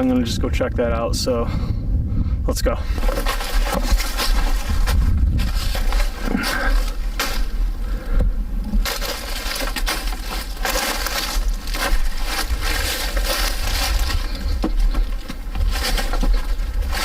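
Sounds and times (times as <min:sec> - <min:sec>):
steady low rumble: 0:00.0 - 0:17.0
footsteps on trail: 0:02.8 - 0:17.0.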